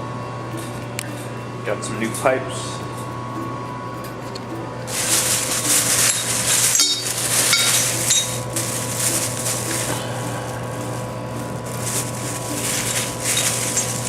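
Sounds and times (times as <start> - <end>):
steady low hum: 0.0 - 14.0
metal pipes clinking and rattling: 4.9 - 10.0, 11.8 - 14.0.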